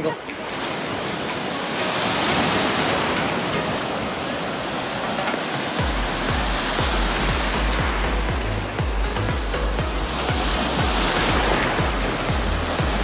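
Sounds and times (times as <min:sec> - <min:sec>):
ocean surf roaring: 0:00.0 - 0:13.0
music with deep bass beat: 0:05.4 - 0:13.0.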